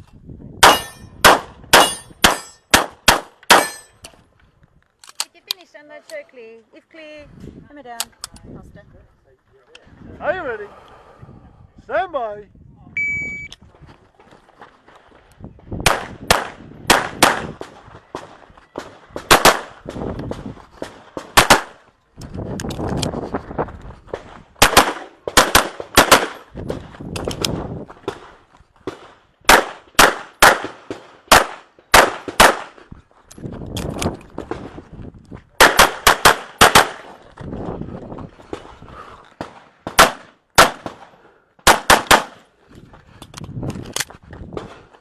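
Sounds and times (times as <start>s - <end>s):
handgun shots: 0.6s - 3.9s, 29.5s - 32.7s, 39.9s - 41.0s, 41.6s - 42.4s.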